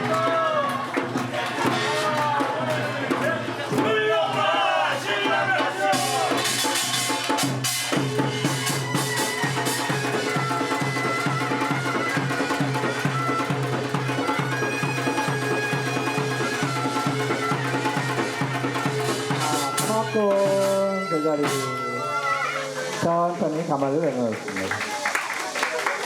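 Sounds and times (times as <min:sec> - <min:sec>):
steady drum beat: 0:00.0 - 0:24.6
reedy wind instrument melody: 0:03.7 - 0:23.4.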